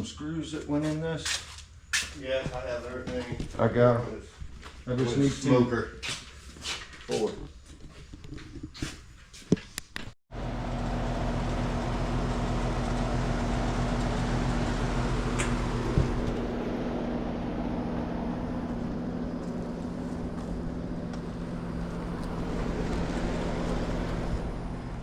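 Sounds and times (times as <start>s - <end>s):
machinery humming: 10.3s - 25.0s.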